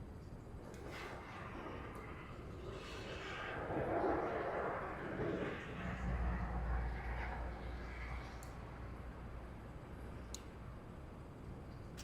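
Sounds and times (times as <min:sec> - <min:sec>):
light click: 0:10.3 - 0:10.5.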